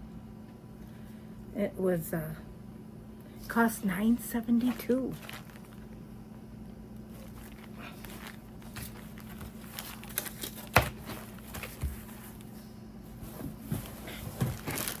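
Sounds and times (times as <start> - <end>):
packages rustling: 3.8 - 6.0, 7.0 - 15.0.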